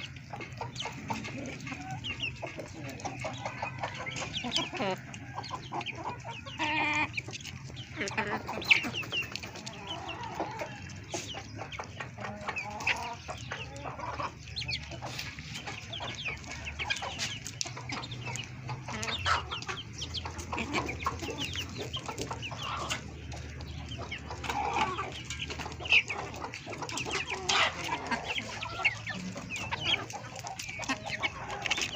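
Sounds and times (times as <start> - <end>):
chickens clucking: 0.0 - 31.9.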